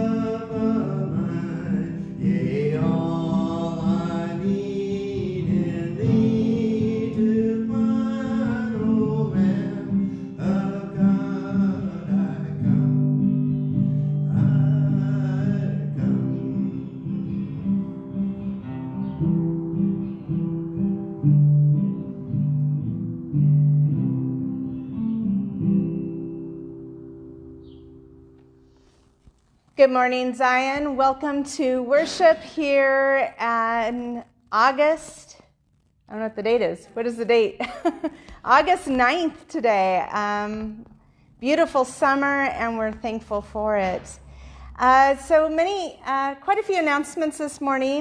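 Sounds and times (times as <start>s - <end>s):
person singing: 0.0s - 13.2s, 13.8s - 18.1s
guitar playing: 0.0s - 29.5s.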